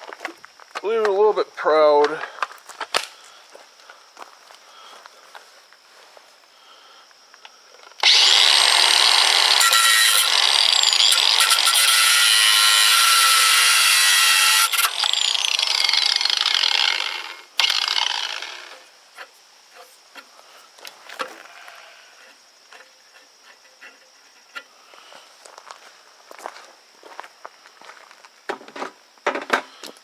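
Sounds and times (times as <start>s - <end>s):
power tool spinning down: 8.0s - 18.8s
power tool grinding steel: 8.0s - 20.3s, 21.1s - 24.8s.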